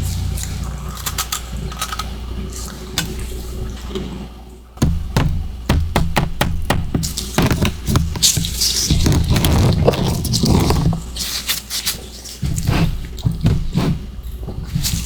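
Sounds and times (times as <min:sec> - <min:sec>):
chewing ice crunches: 0:08.2 - 0:12.7.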